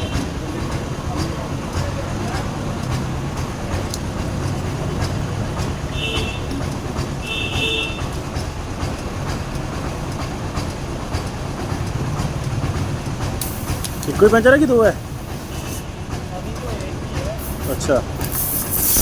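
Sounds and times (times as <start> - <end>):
faint irregular clicks: 0.0 - 19.0
low mechanical rumble: 17.2 - 19.0.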